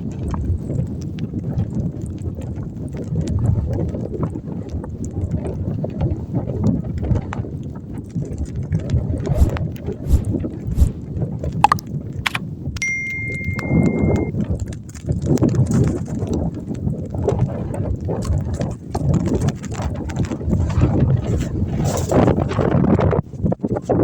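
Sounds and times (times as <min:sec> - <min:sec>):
wind buffeting microphone: 0:00.0 - 0:12.8, 0:14.1 - 0:24.0
high beep: 0:12.8 - 0:14.3.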